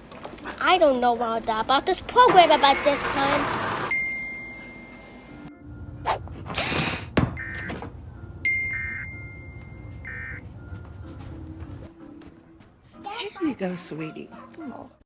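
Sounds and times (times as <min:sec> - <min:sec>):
low hum: 0:01.6 - 0:11.9
buzzy digital chirps: 0:02.3 - 0:04.2.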